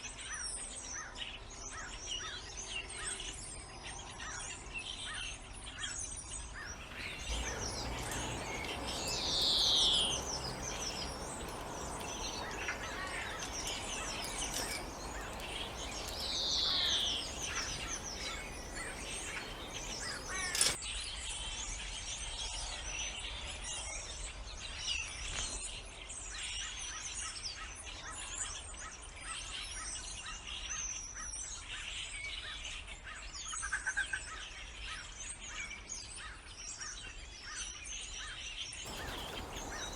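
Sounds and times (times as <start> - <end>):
birds chirping and calling: 6.6 - 20.8, 38.9 - 39.9
downward sliding bird calls: 6.7 - 20.8, 38.9 - 39.9.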